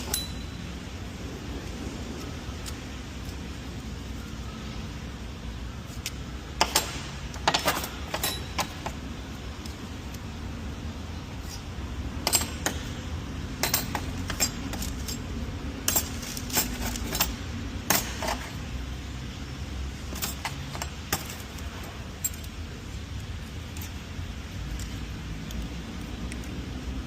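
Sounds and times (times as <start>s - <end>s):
metal clinks and taps: 0.0s - 1.0s, 6.6s - 9.8s, 12.2s - 12.9s, 13.6s - 18.6s, 20.0s - 26.6s.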